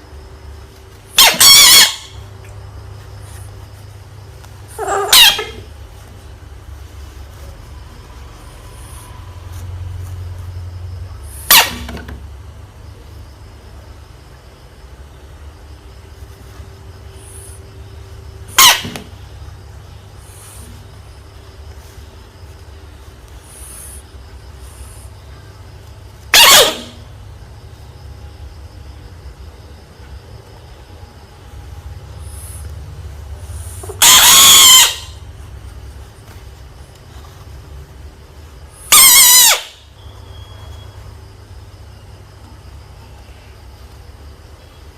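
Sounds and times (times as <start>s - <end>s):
steady low hum: 0.0s - 39.0s
frog screaming: 1.1s - 2.3s, 4.7s - 5.8s, 11.3s - 11.9s, 18.5s - 19.1s, 26.3s - 27.0s, 33.6s - 35.3s, 38.8s - 40.5s.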